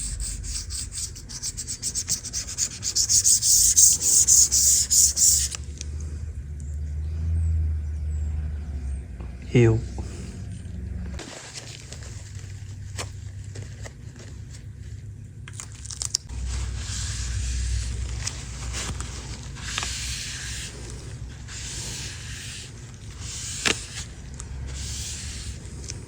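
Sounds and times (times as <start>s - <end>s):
razor blade scraping: 0.0s - 5.6s.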